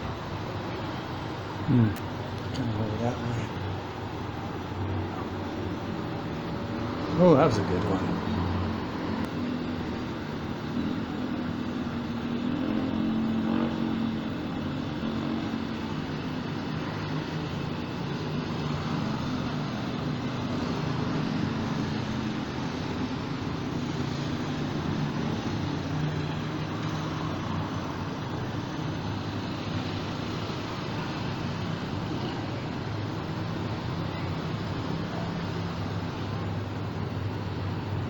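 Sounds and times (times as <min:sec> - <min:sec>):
street traffic hum: 0:00.0 - 0:38.0
vehicles passing: 0:00.0 - 0:38.0.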